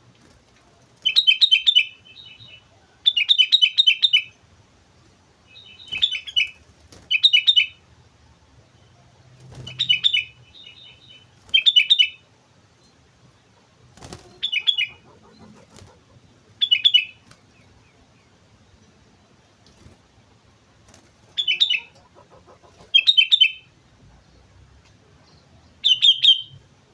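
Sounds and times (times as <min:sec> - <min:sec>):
bird singing bubbly phrases: 0:14.2 - 0:18.1, 0:25.8 - 0:26.6.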